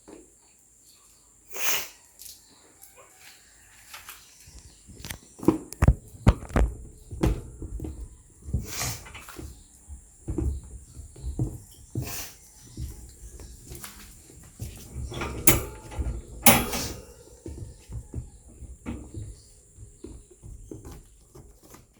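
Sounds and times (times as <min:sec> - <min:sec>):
dogs scuffling: 0:05.0 - 0:21.9
thumps and knocks: 0:05.5 - 0:21.9.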